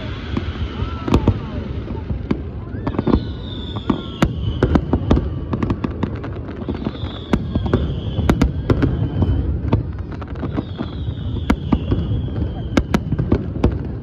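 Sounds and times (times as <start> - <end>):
fireworks crackling bangs: 0.0 - 14.0
high falling whistle: 2.7 - 5.6, 6.6 - 9.6, 10.4 - 13.3.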